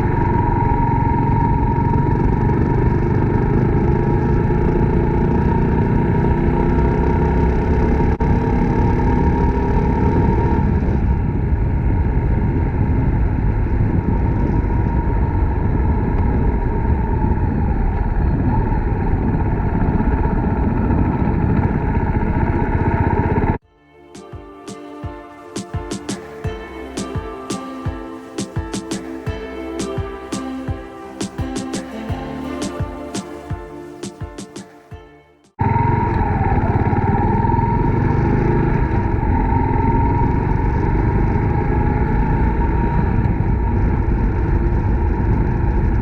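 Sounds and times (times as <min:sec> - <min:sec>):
guitar music: 0:23.7 - 0:35.5.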